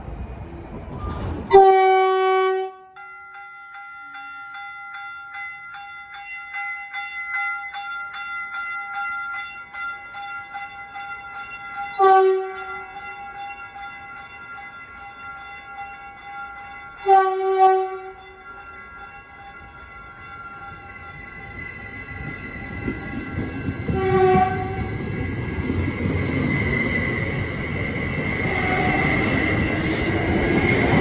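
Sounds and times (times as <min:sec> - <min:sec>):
train rumble: 0:00.0 - 0:02.6, 0:16.8 - 0:31.0
train horn blast: 0:01.5 - 0:03.0, 0:12.0 - 0:12.9, 0:17.0 - 0:18.2, 0:23.9 - 0:24.9.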